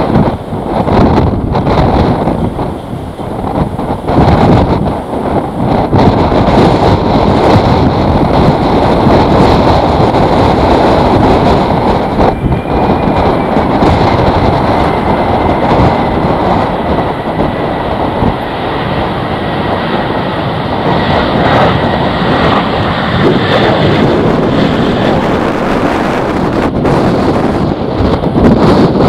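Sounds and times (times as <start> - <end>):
high whine sinking in pitch: 0.0 - 29.0
jet engines running: 0.0 - 29.0
wind buffeting microphone: 0.0 - 29.0.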